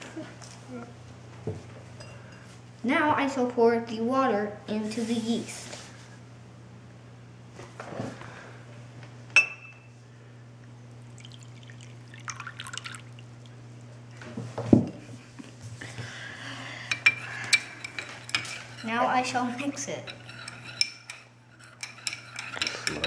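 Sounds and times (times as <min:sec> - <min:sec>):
glassy clink: 0:09.4 - 0:09.9
drips: 0:11.0 - 0:13.6
water pouring into container: 0:11.1 - 0:13.3.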